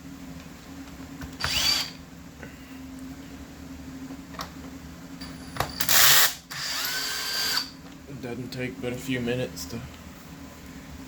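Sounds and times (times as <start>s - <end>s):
steady low hum: 0.0s - 11.0s
power driver whine: 1.2s - 2.0s, 5.2s - 7.8s.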